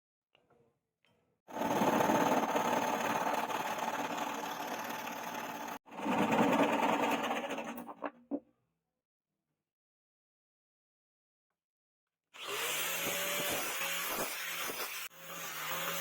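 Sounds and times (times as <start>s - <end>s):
power tool whining: 12.4s - 16.0s.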